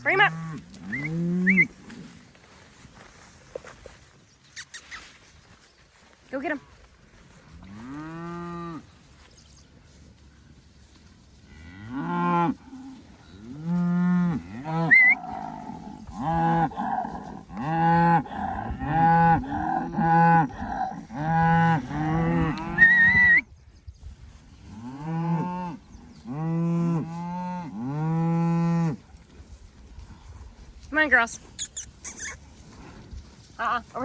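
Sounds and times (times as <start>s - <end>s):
cattle mooing: 11.5s - 23.2s.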